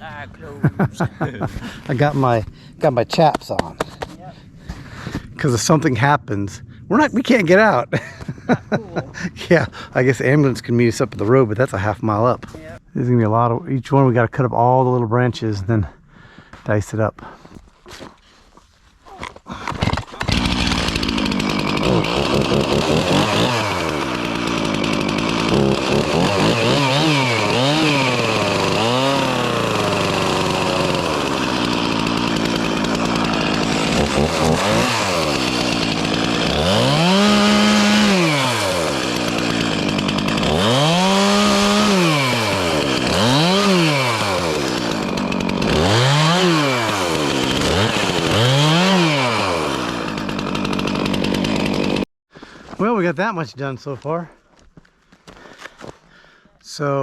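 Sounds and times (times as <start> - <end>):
chainsaw cutting branches: 19.6 - 52.5.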